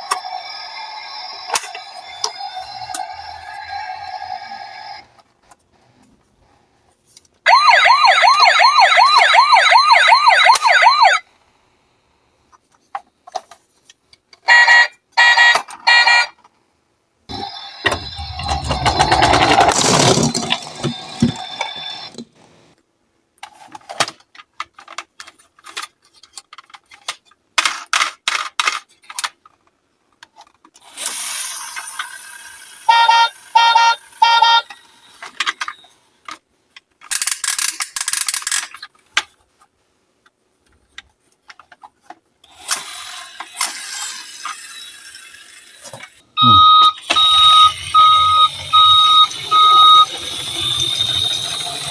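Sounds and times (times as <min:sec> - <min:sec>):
toy cars rolling and clattering: 0:00.0 - 0:06.1, 0:17.3 - 0:22.4, 0:23.4 - 0:46.2, 0:47.0 - 0:51.9
pulsed electronic siren tone: 0:07.5 - 0:11.2, 0:46.4 - 0:51.9.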